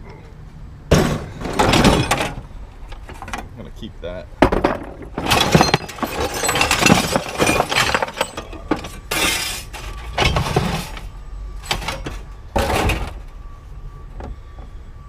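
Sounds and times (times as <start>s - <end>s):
scrap metal clattering: 0.9s - 3.4s, 4.4s - 13.2s.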